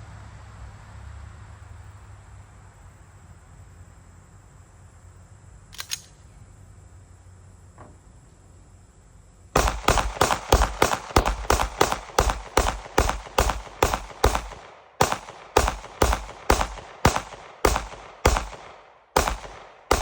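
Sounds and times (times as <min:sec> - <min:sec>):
low background noise: 0:00.0 - 0:20.0
sharp metallic click: 0:05.7 - 0:06.3
pistol gunshots: 0:09.6 - 0:20.0.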